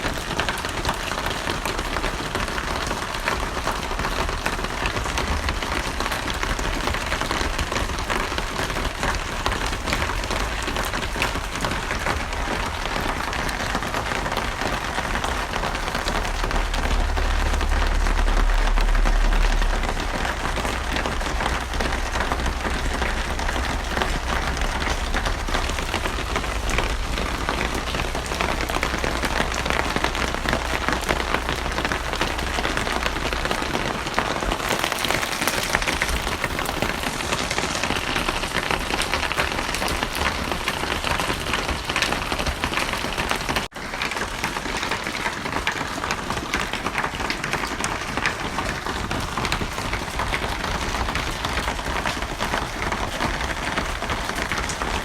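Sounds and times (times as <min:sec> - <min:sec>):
heavy rain pattering: 0:00.0 - 0:55.0
low rumble: 0:03.7 - 0:40.2.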